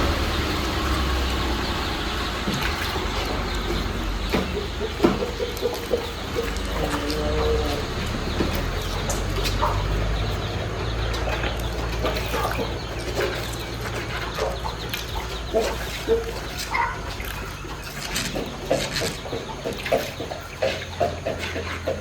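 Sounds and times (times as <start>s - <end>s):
rooster clucking: 0.0s - 22.0s
rustles and clicks: 2.4s - 22.0s.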